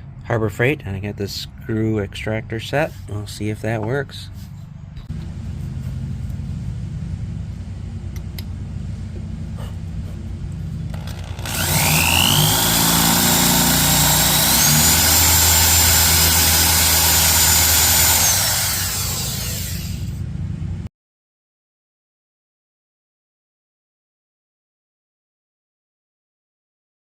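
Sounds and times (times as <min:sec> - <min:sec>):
electric drill whining: 0:10.9 - 0:20.2.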